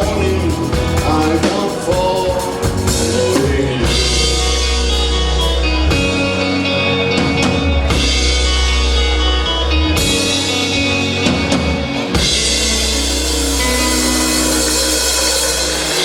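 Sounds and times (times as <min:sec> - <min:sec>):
rock band playing: 0:00.0 - 0:16.0
cymbals crashing: 0:12.3 - 0:16.0.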